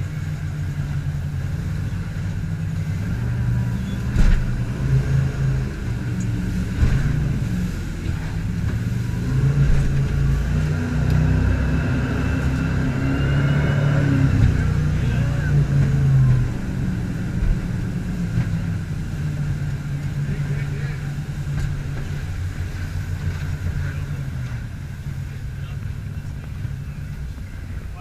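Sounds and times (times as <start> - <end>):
boat engine running: 0.0 - 28.0.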